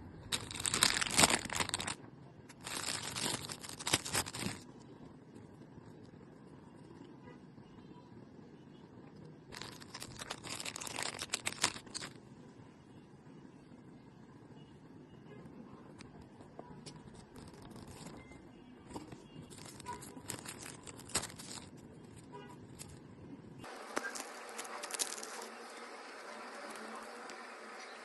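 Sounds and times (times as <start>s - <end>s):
packaging crinkling and tearing: 0.3s - 4.7s, 9.5s - 12.2s, 16.8s - 18.2s, 19.0s - 21.8s, 23.6s - 27.9s.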